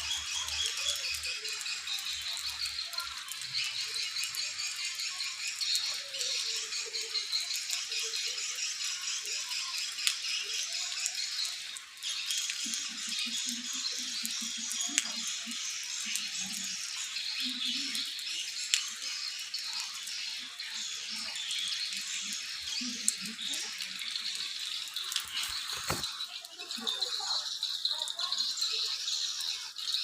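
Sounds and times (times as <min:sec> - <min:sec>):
swiftlets chattering: 0:15.4 - 0:30.0.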